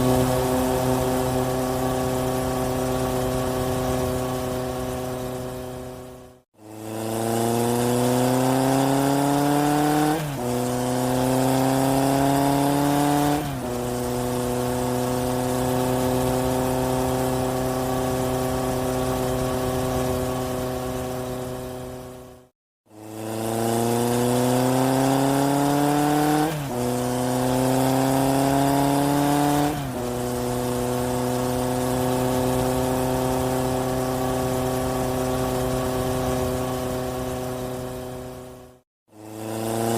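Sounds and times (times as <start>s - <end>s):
vehicle engine accelerating: 0.0s - 39.9s.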